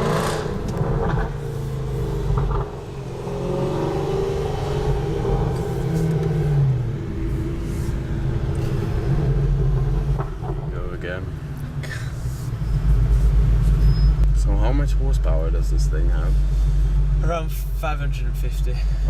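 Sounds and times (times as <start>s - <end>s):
car engine revving hard: 0.0s - 10.1s.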